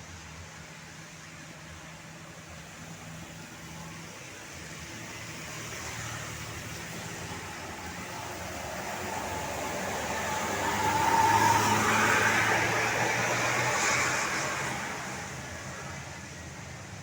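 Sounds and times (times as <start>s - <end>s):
vehicle approaching: 4.6s - 17.0s.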